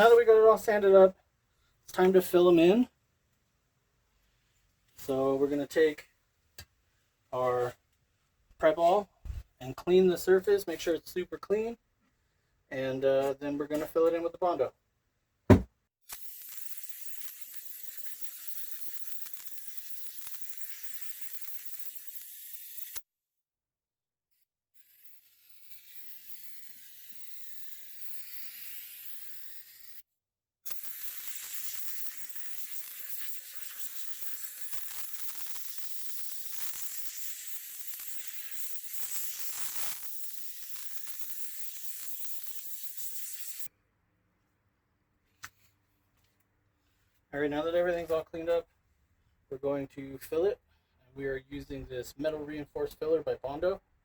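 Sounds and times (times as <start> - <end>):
hissing spray: 30.7 - 43.7.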